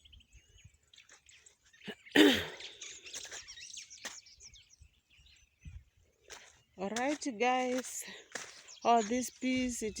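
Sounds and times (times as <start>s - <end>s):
faint birds chirping: 0.0s - 10.0s
person coughing: 1.9s - 2.6s.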